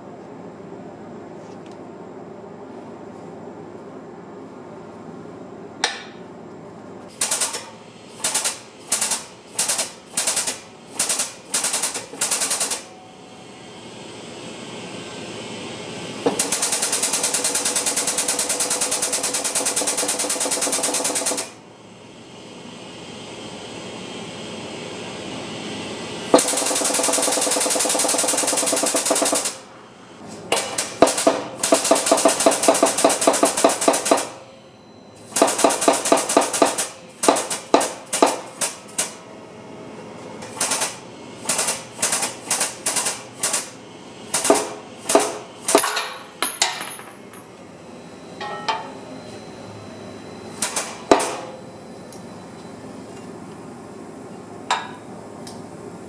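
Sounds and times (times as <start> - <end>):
impact wrench hammering: 5.8 - 6.2, 30.5 - 34.3, 44.4 - 47.1.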